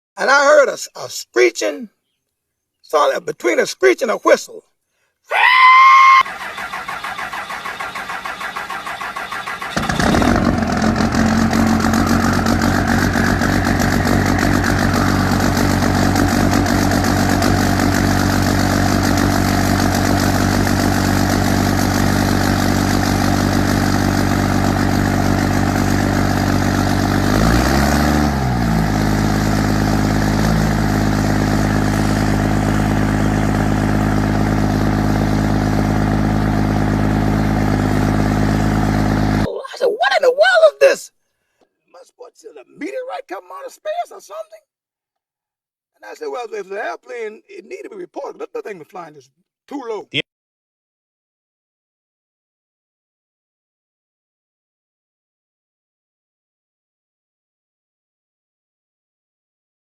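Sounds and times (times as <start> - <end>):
turbo whistle: 5.5 - 10.4
starter motor cranking: 6.2 - 29.4
diesel engine idling: 6.3 - 39.5.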